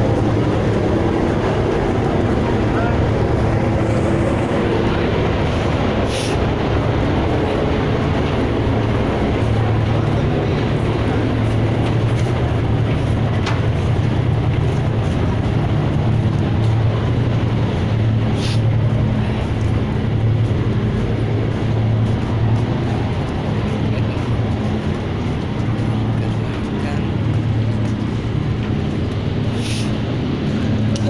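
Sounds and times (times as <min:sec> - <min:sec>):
boat engine droning: 0:00.0 - 0:31.0
short hiss: 0:06.1 - 0:06.4, 0:29.6 - 0:30.0.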